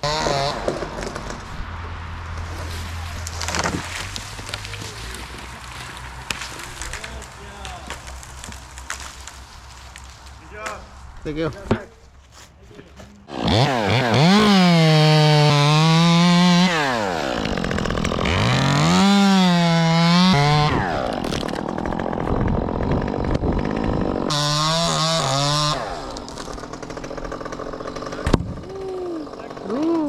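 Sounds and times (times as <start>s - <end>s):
chainsaw revving and cutting: 0.0s - 1.4s, 13.3s - 30.0s.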